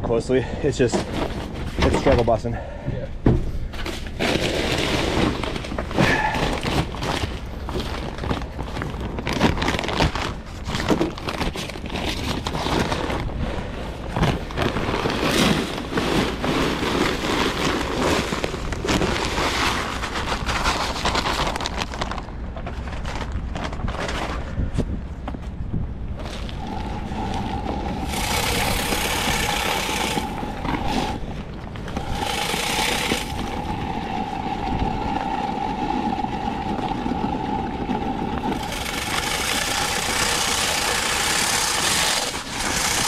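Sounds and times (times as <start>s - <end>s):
heavy wind noise: 17.8s - 40.4s
salt spreader ticking: 26.6s - 30.6s, 31.9s - 33.9s, 38.5s - 43.0s.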